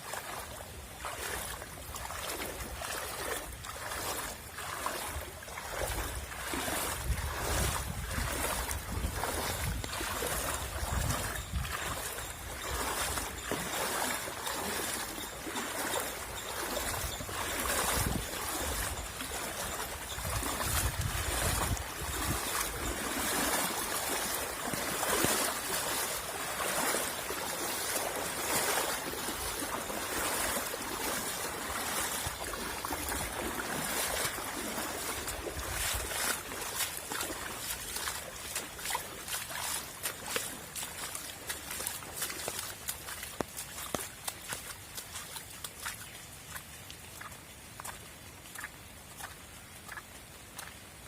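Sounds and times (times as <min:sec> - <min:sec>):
floodwater rushing: 0:00.0 - 0:51.0
wind rumbling on microphone: 0:00.8 - 0:38.0.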